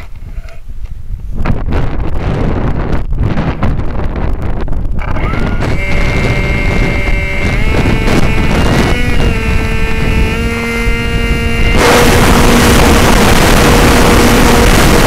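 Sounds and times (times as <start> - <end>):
wind buffeting microphone: 0.0 - 15.0
model airplane motor whine: 5.0 - 15.0.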